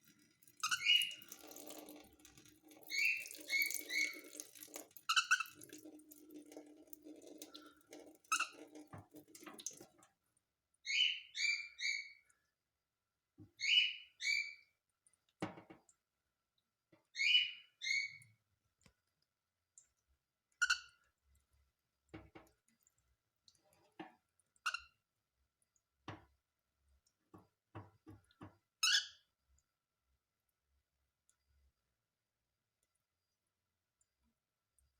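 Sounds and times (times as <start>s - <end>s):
cockatiel chirping: 0.6s - 1.2s, 17.2s - 18.2s.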